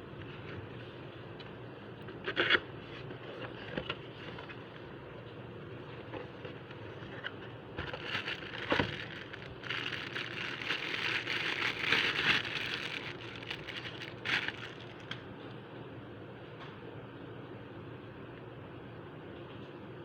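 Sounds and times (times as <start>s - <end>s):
steady low hum: 0.0s - 19.4s
packaging rustling and crinkling: 6.2s - 15.2s.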